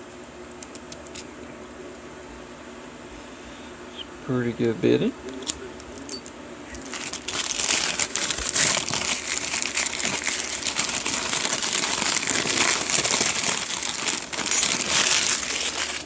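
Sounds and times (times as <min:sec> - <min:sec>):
packaging crinkling and rustling: 0:06.8 - 0:16.0.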